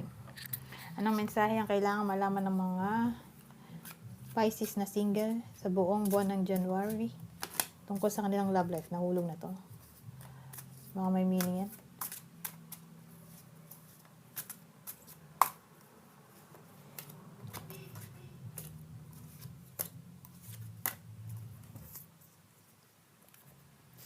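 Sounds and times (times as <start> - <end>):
faint low hum: 0.0 - 24.0
cards tapping and snapping: 6.0 - 7.8, 9.9 - 13.0, 13.6 - 15.6, 16.5 - 22.0.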